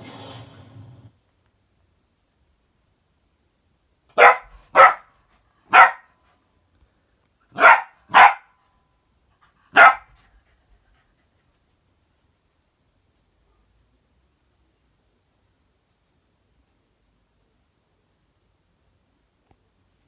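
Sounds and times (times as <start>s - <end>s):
dog barking: 4.1s - 6.2s, 7.5s - 8.6s, 9.7s - 10.3s.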